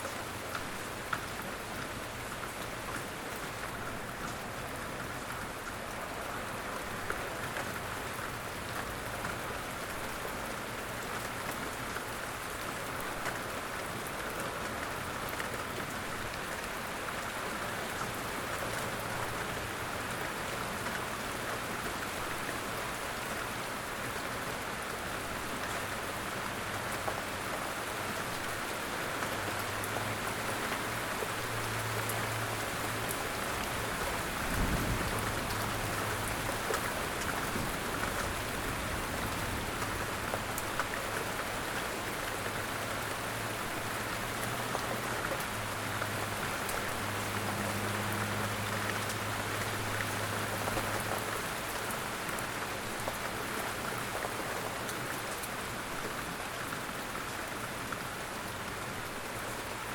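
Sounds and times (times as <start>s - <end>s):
light rain patter: 0.0s - 59.9s.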